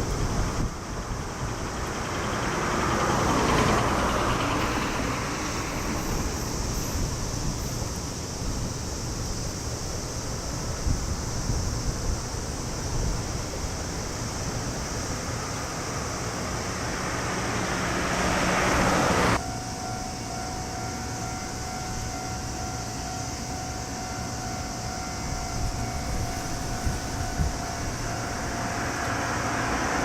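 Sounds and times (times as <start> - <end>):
wind noise: 0.0 - 3.4, 4.4 - 19.4, 24.8 - 30.0
train running noise: 0.0 - 30.0
level crossing warning alarm: 19.4 - 28.9.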